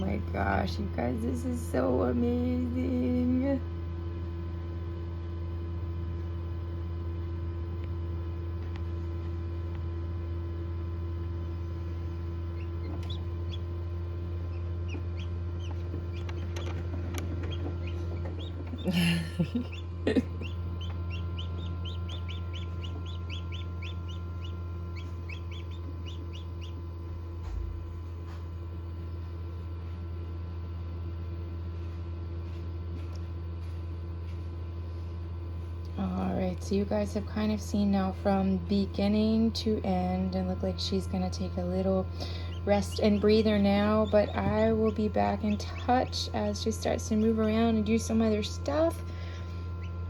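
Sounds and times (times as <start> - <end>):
steady low hum: 0.0 - 50.0
chick peeping: 12.4 - 13.7, 14.4 - 18.9, 20.4 - 26.9, 42.3 - 48.6.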